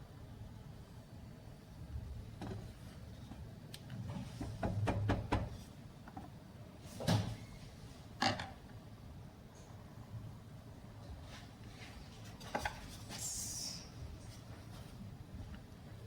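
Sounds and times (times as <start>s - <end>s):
kitchen knocks and clicks: 4.4s - 5.6s.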